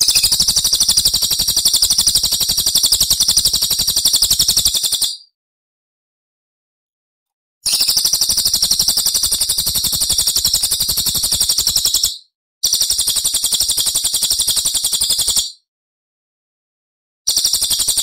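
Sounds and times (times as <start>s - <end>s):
songbird high-pitched trill: 0.0s - 5.3s, 7.7s - 8.7s.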